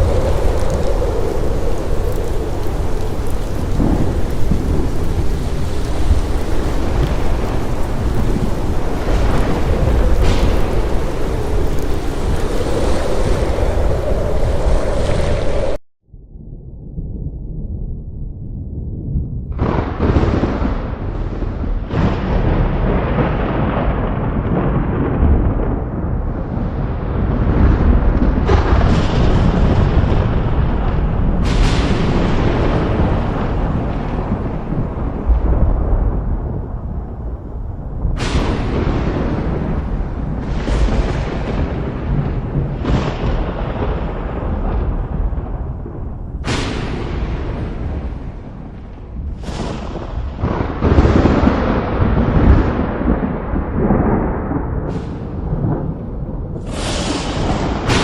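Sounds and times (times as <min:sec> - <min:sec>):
explosion booms: 0:00.0 - 0:15.8, 0:19.0 - 0:58.0
deep continuous rumble: 0:00.0 - 0:58.0.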